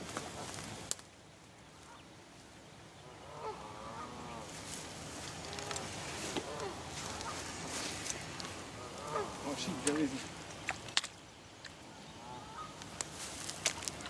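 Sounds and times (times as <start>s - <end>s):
geese honking: 3.0s - 10.3s, 11.9s - 12.9s.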